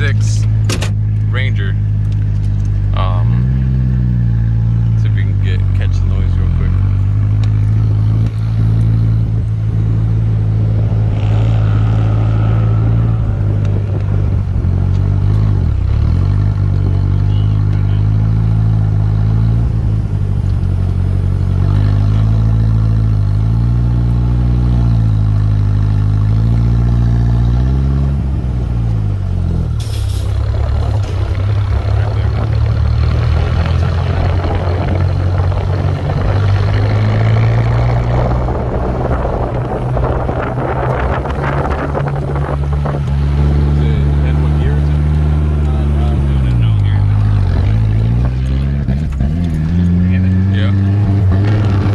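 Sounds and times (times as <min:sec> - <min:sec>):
four-cylinder engine running: 0:00.0 - 0:51.9.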